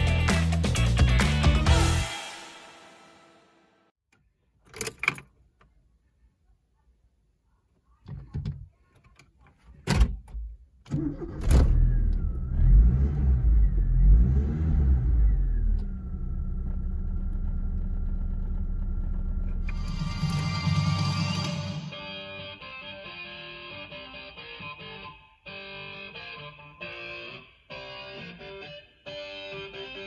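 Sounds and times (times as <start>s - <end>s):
car stereo music: 0.0s - 2.3s, 19.5s - 30.0s
car engine starting and idling: 10.9s - 21.0s.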